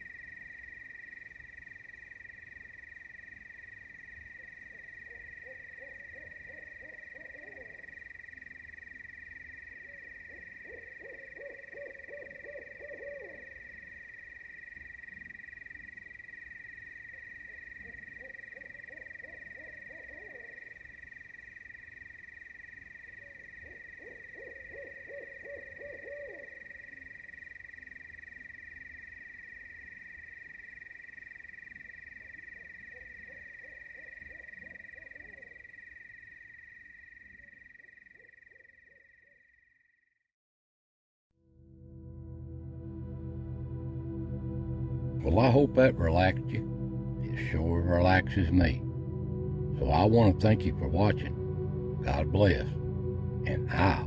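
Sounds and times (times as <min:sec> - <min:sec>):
low trilling animal call: 0:23.2 - 0:26.6.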